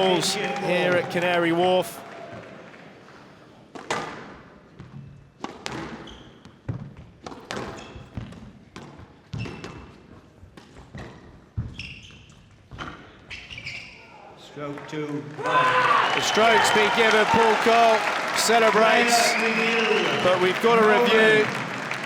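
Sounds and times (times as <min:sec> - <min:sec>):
shoe squeaks: 0:06.0 - 0:06.6, 0:07.6 - 0:08.3, 0:09.3 - 0:10.0, 0:10.8 - 0:14.2.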